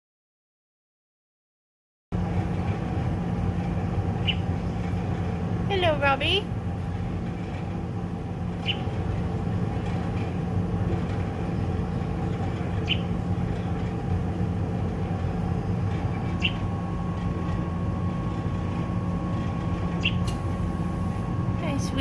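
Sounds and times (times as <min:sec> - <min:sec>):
faint steady whine: 0:02.2 - 0:22.0
steady low hum: 0:02.2 - 0:22.0
fledgling bird chirping: 0:04.2 - 0:04.9, 0:08.5 - 0:09.0, 0:11.4 - 0:13.9, 0:15.2 - 0:16.8, 0:19.4 - 0:20.3.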